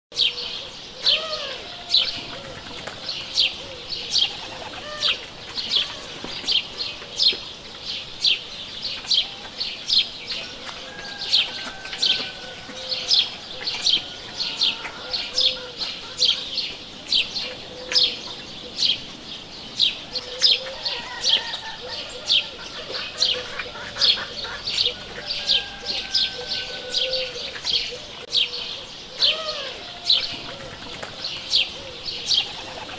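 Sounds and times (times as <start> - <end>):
small birds chirping: 0.2 - 32.9
drawn-out lower bird calls: 0.3 - 7.4, 20.0 - 32.9.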